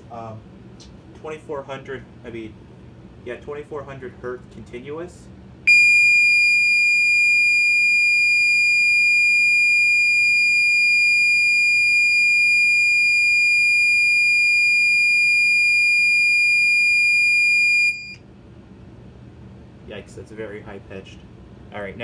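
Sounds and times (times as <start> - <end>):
high-pitched alarm tone: 5.7 - 18.2.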